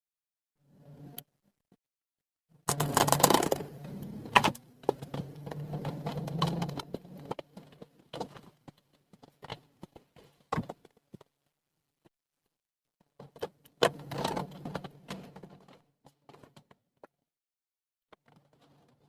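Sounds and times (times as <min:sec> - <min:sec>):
plastic packaging rustling: 0:02.7 - 0:03.6.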